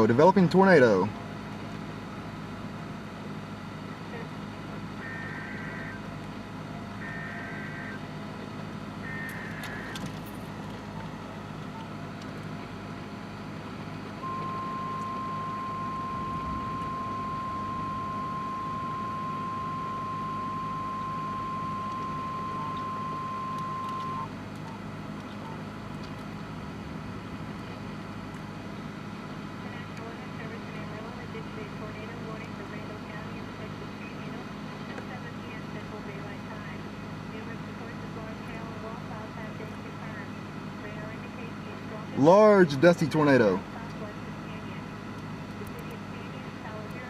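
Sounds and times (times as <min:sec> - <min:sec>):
vehicle hum: 0:00.0 - 0:47.0
steady alarm tone: 0:05.0 - 0:06.1, 0:07.0 - 0:08.1, 0:09.0 - 0:10.0, 0:14.2 - 0:24.4
warbling data bursts: 0:14.2 - 0:24.3.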